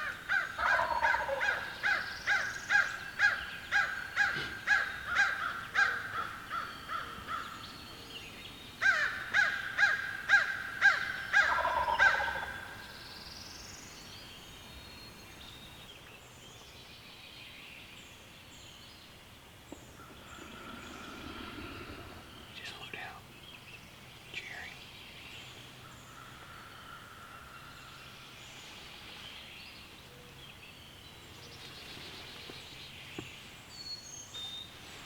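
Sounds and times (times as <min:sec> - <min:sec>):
crow cawing: 0:00.0 - 0:07.6, 0:08.8 - 0:12.8, 0:26.1 - 0:27.7
faint birdsong: 0:00.0 - 0:35.0.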